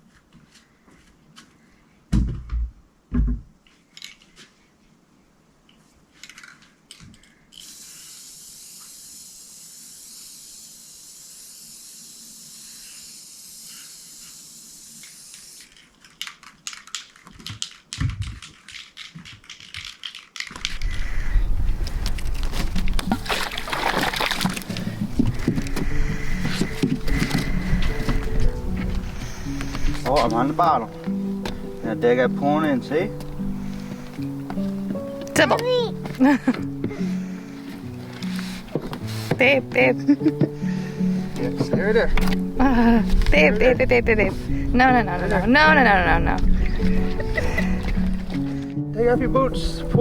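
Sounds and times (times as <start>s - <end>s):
high hiss of spraying: 7.6s - 15.9s, 29.2s - 30.1s
music: 24.4s - 50.0s.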